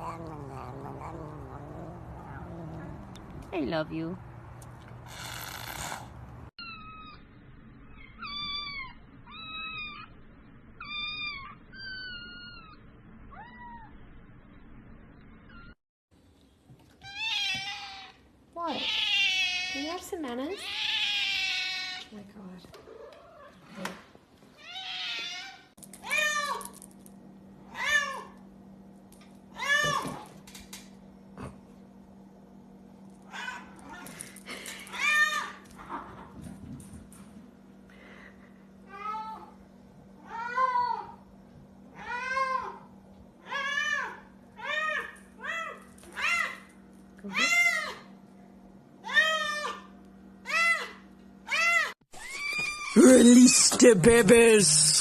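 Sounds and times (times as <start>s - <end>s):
cat meowing: 20.6s - 22.0s.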